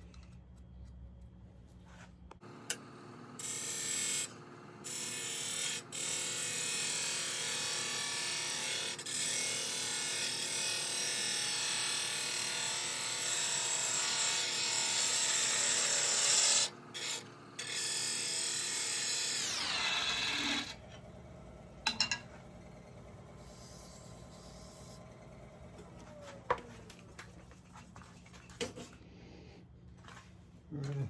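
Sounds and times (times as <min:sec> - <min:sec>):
lathe spinning down: 0:02.4 - 0:09.8, 0:10.5 - 0:27.2
wood lathe motor hum: 0:02.4 - 0:27.2
turning tool cutting wood: 0:02.4 - 0:27.3.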